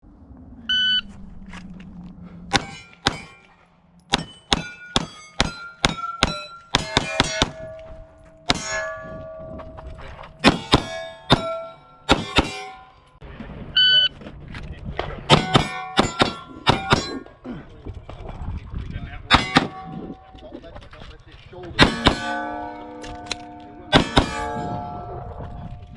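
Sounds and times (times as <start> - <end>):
steel targets ringing: 2.5 - 13.2, 15.3 - 17.4, 19.3 - 20.5, 21.8 - 25.9.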